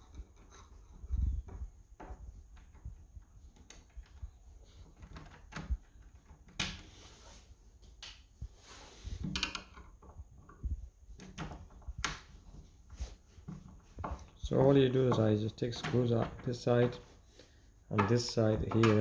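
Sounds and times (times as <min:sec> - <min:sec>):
metal clicks and knocks: 0:13.4 - 0:17.2, 0:17.9 - 0:19.0.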